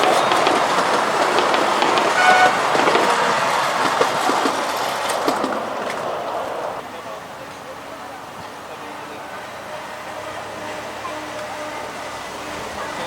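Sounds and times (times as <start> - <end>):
miniature train running on track: 0.0 - 13.0
train whistle toot: 1.6 - 3.9, 8.8 - 13.0
wheel clicks: 3.8 - 6.8.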